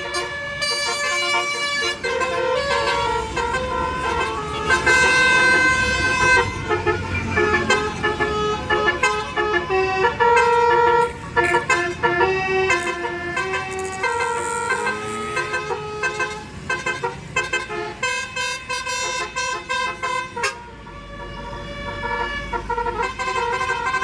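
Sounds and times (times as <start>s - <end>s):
musical air horn playing a tune: 0.0s - 24.0s.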